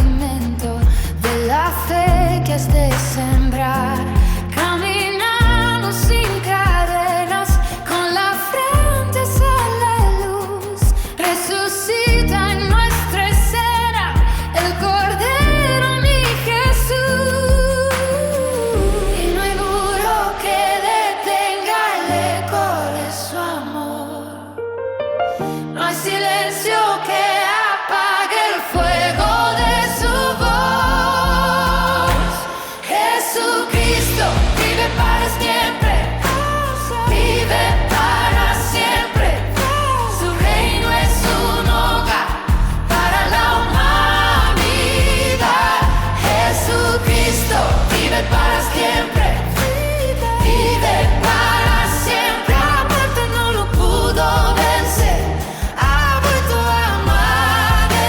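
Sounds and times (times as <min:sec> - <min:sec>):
worship song vocals with vibrato: 0:00.0 - 0:58.0
steady low beat: 0:02.1 - 0:04.6, 0:05.4 - 0:07.9, 0:08.8 - 0:11.2, 0:15.4 - 0:17.9, 0:33.8 - 0:58.0.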